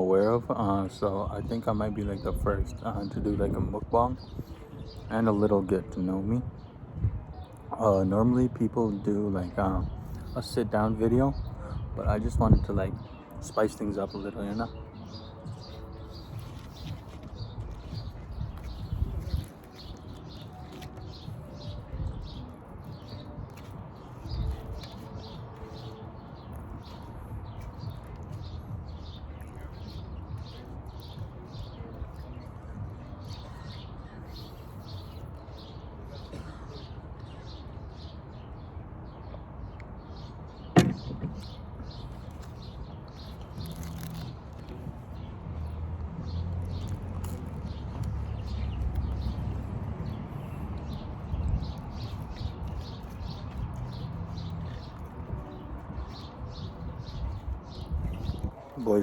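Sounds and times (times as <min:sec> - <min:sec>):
small birds chirping: 0:00.0 - 0:59.0
low rumbling bumps: 0:40.6 - 0:42.8
sharp click or knock: 0:40.8 - 0:41.5.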